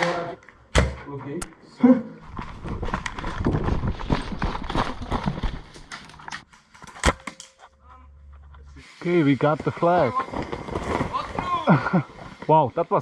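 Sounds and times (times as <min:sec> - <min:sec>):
running footsteps: 0:02.2 - 0:06.4
gear rustling and rattling: 0:02.3 - 0:06.4.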